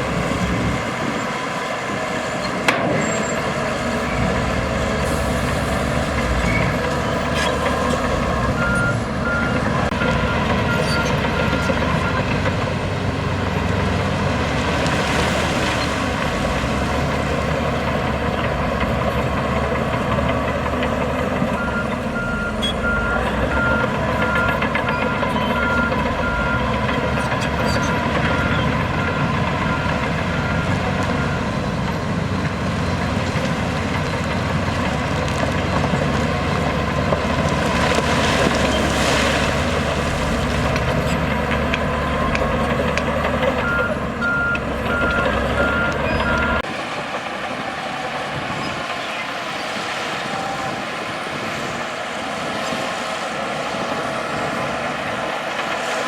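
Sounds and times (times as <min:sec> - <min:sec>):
diesel earthmoving machinery running: 0:00.0 - 0:56.0
reversing alarm beeping: 0:08.5 - 0:12.3, 0:21.5 - 0:31.6, 0:43.6 - 0:46.6.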